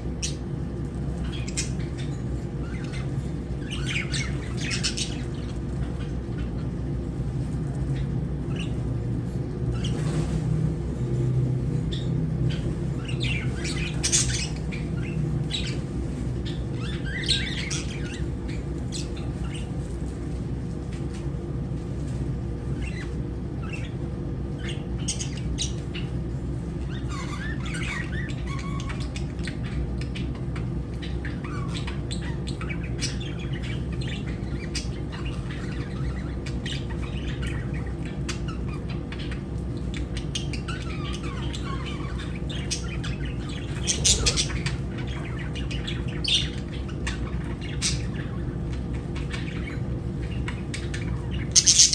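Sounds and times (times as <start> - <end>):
birds squawking: 0.0 - 7.0, 11.8 - 20.2, 22.6 - 51.9
steady low hum: 0.0 - 51.9
lovebirds chirping: 1.1 - 6.6, 12.5 - 19.8, 31.0 - 51.9.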